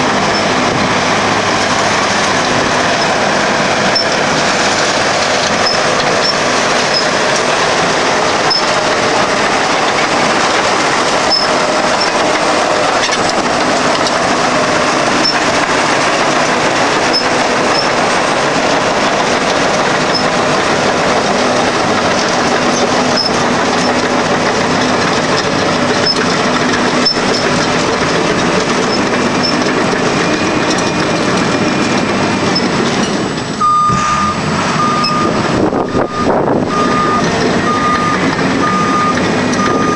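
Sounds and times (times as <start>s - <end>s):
dozer engine running: 0.0s - 39.9s
steel tracks squeaking and clanking: 0.0s - 39.9s
reversing alarm beeping: 11.2s - 12.2s, 17.1s - 18.0s, 33.6s - 39.9s.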